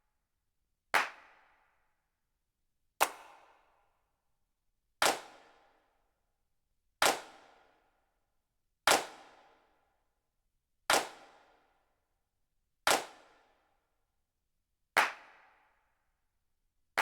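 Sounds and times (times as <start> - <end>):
hand claps with reverb: 0.9 - 1.8, 3.0 - 3.9, 5.0 - 5.8, 7.0 - 7.6, 8.9 - 9.5, 10.9 - 11.5, 12.9 - 13.6, 14.9 - 15.7.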